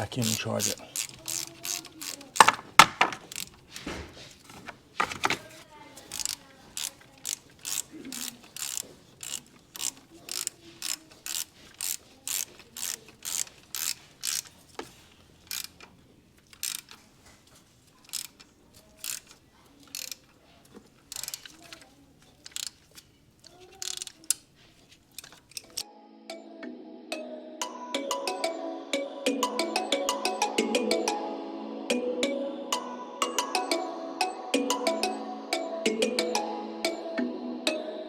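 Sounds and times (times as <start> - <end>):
ratchet wrench clicking: 0.2 - 3.6, 6.0 - 14.6, 15.4 - 15.9, 16.5 - 17.0, 18.0 - 20.4, 21.0 - 24.5, 25.1 - 25.8.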